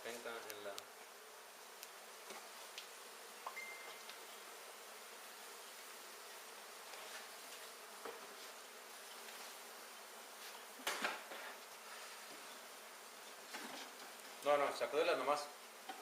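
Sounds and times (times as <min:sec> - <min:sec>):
bees buzzing: 0:00.0 - 0:16.0.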